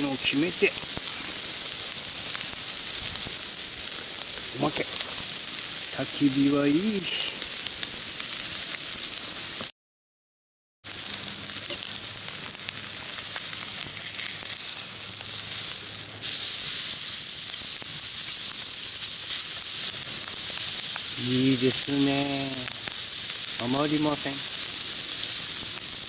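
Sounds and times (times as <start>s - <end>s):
meat sizzling on griddle: 0.0s - 9.7s, 10.9s - 26.0s.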